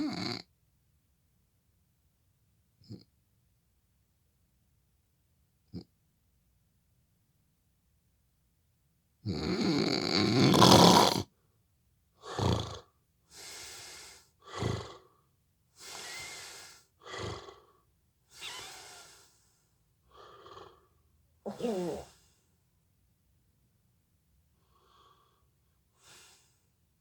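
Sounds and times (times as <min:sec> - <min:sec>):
man snoring: 0:09.4 - 0:11.2.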